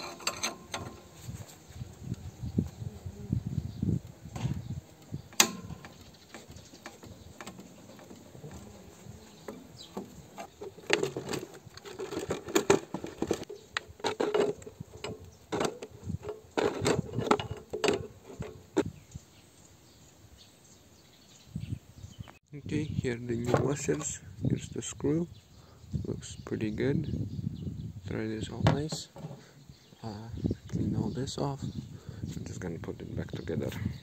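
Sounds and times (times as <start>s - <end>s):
hand tools clicking on metal: 0.0s - 1.1s, 5.3s - 8.7s.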